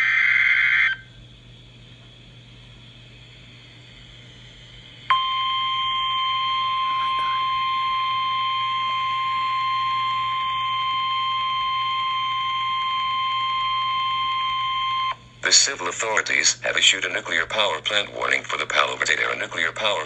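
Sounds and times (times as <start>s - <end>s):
high-pitched alarm tone: 5.1s - 15.2s.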